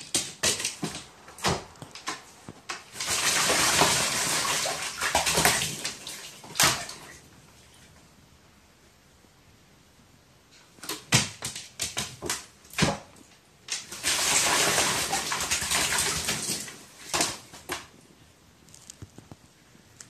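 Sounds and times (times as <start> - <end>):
crow splashing in water: 0.1 - 7.2, 13.7 - 17.9.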